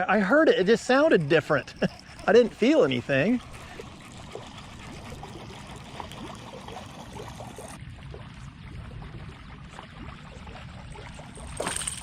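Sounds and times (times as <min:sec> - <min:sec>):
water lapping against boat hull: 0:00.0 - 0:12.0
small splashes and drips: 0:03.0 - 0:12.0.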